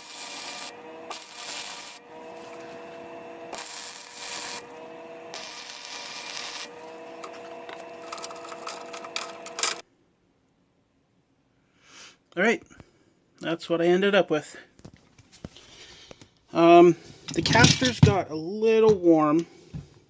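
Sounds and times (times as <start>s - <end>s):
grinder motor whine: 0.0s - 9.8s
harsh grinding on steel: 0.0s - 9.8s.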